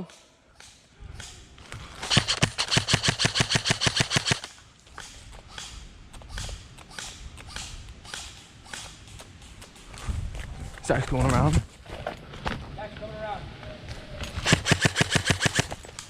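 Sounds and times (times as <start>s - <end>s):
airsoft rifle automatic fire: 2.0s - 4.5s, 14.4s - 15.8s.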